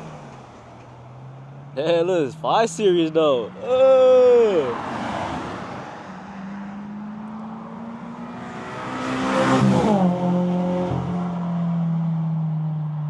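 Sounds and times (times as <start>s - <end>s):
steady engine hum: 0.0s - 13.0s
car passing by: 4.6s - 11.6s.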